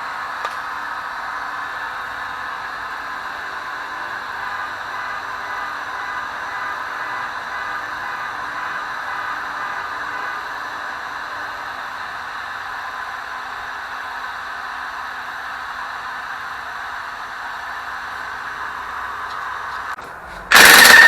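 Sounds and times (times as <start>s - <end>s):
heating tool hissing: 20.5s - 21.0s
power tool burst: 20.5s - 21.0s.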